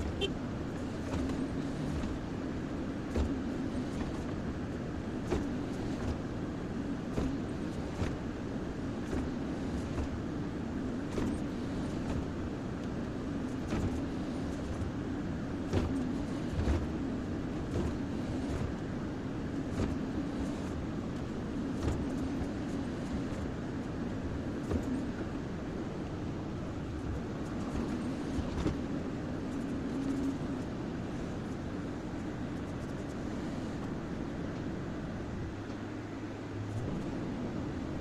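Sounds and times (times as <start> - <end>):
excavator running: 0.0 - 38.0.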